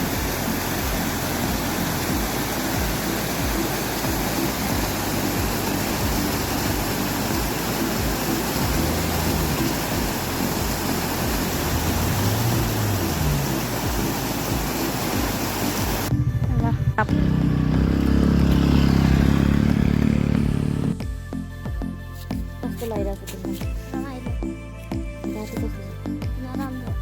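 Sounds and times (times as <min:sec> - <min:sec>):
river rushing: 0:00.0 - 0:16.1, 0:17.3 - 0:21.0.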